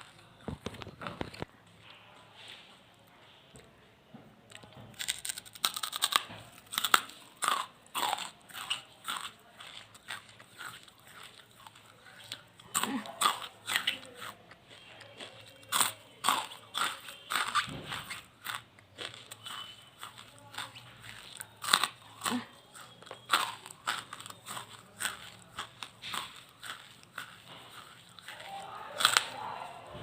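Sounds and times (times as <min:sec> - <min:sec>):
person chewing crunchy charcoal: 0:00.0 - 0:02.0, 0:04.5 - 0:30.0.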